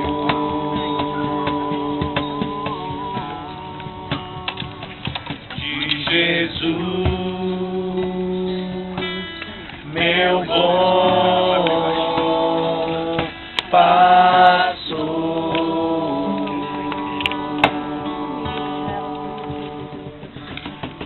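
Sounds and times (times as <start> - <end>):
person singing: 0.0 - 5.1, 10.0 - 20.2
acoustic guitar: 0.0 - 21.0.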